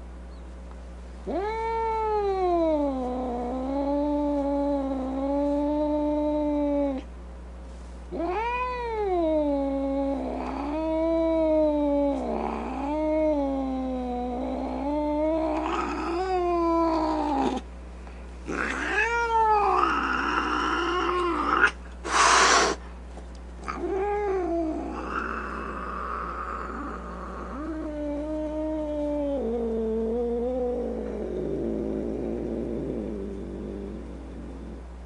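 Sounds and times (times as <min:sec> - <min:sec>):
cat yowling: 0:08.2 - 0:17.6, 0:18.5 - 0:22.8, 0:23.7 - 0:31.0.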